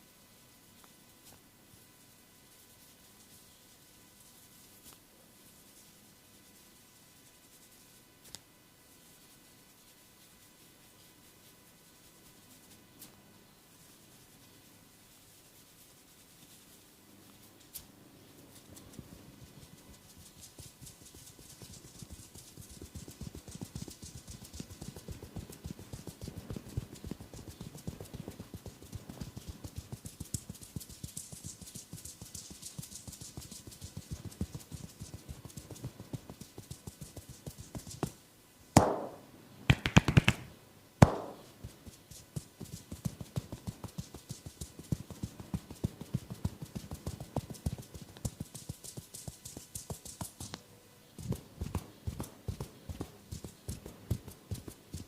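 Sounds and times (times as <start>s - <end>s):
rhythmic tapping on head: 18.9s - 38.2s, 38.8s - 50.6s, 51.2s - 55.0s.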